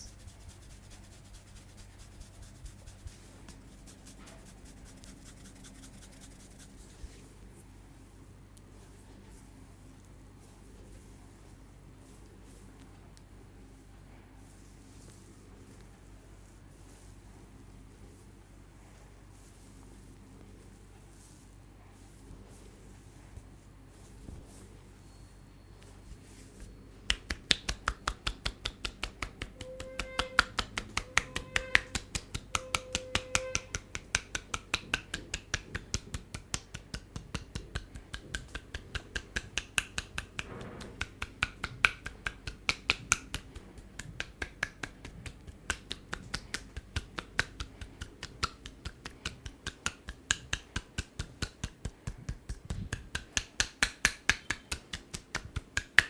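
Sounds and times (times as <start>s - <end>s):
hands tapping on head: 0.7s - 6.9s, 26.6s - 56.0s.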